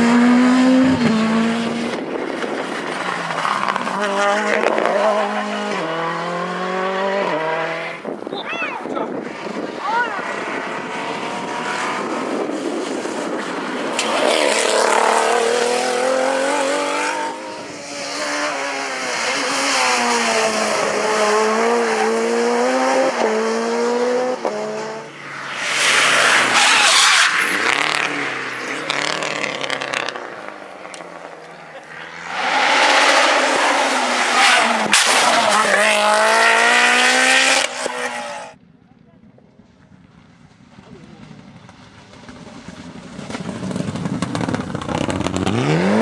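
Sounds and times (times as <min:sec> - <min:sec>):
rally car engine revving: 0:00.0 - 0:08.2, 0:09.0 - 0:38.6, 0:40.8 - 0:46.0
loud rushing noise bursts: 0:25.0 - 0:30.2.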